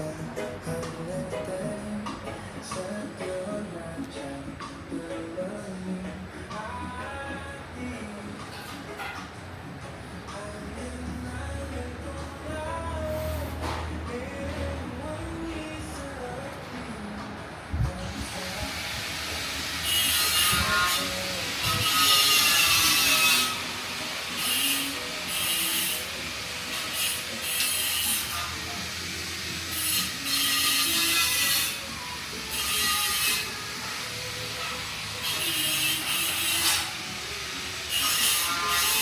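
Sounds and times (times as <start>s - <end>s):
rasping scraping strokes: 29.7s - 39.0s.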